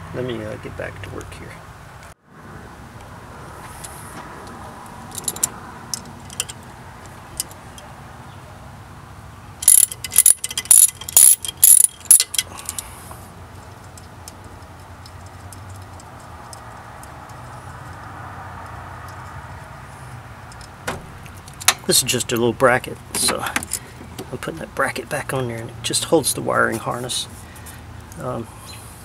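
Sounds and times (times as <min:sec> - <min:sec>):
ratchet wrench clicking: 0:05.1 - 0:06.6, 0:09.6 - 0:12.8.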